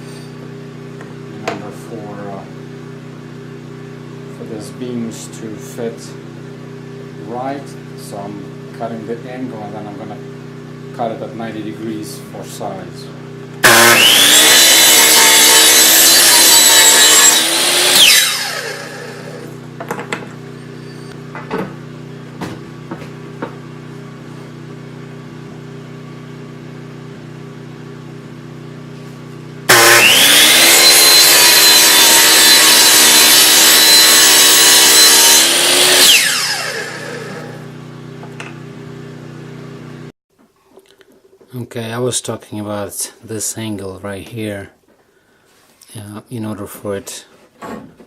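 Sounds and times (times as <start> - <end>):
power saw cutting wood: 13.6 - 21.2, 29.6 - 38.6.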